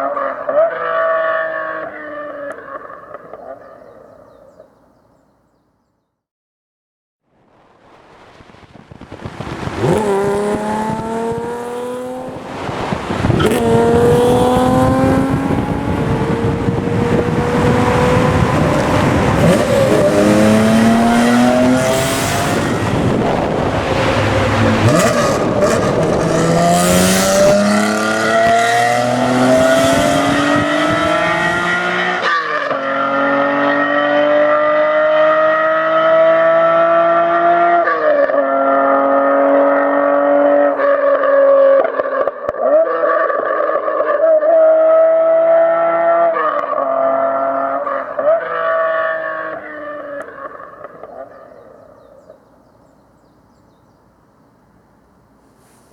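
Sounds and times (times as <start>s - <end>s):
car engine accelerating hard: 9.1s - 41.8s, 44.0s - 51.6s.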